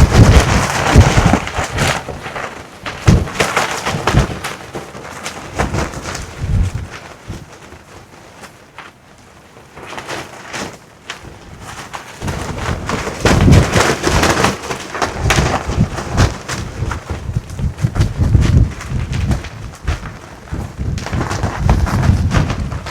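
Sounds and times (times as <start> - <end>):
strong wind buffeting microphone: 0.0 - 2.3, 2.9 - 4.5, 5.5 - 7.5, 11.3 - 22.9.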